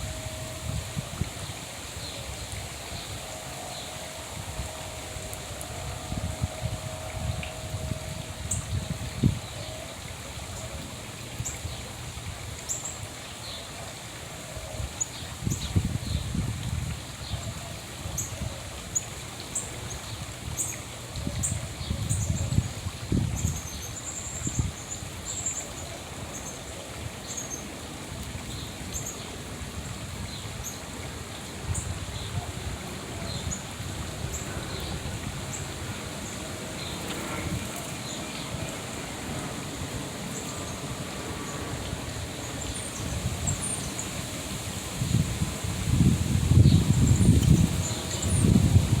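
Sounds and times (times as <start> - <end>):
songbirds chirping: 23.4 - 45.3.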